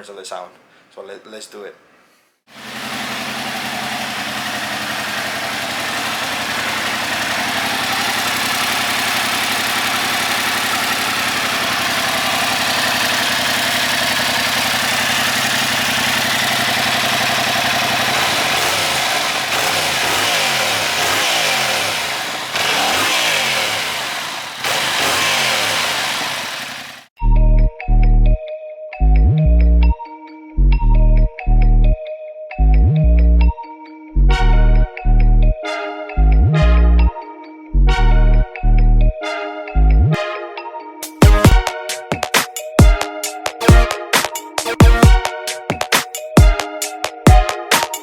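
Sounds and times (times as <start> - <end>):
motorcycle engine idling: 2.5 - 27.1, 41.1 - 48.0.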